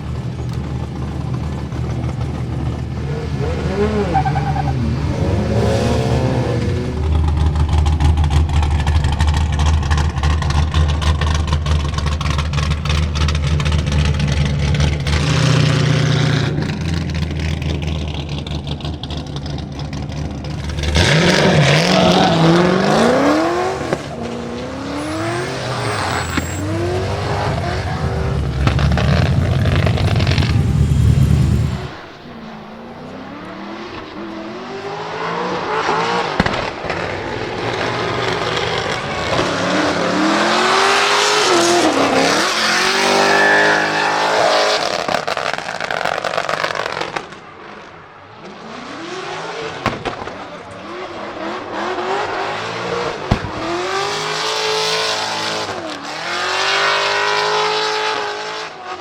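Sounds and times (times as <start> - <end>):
engine revving at high revs: 3.1 - 7.1, 20.8 - 32.0.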